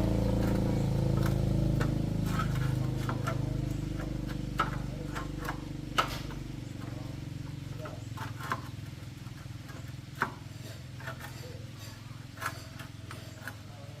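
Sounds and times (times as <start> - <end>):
machine humming: 0.0 - 8.6.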